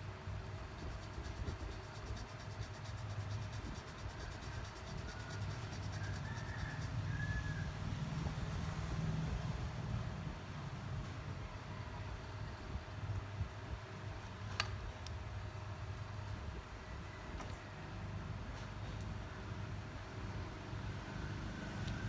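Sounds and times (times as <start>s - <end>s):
low background rumble: 0.0s - 14.0s.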